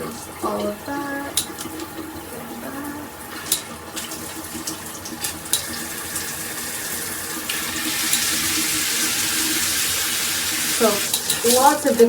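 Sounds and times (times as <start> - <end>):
water spraying from shower head: 0.0 - 12.0.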